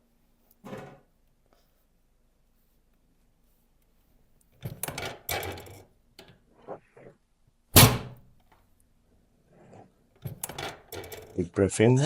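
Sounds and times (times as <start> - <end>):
clattering and rustling on table: 0.5 - 1.7, 4.6 - 7.2, 9.5 - 11.4.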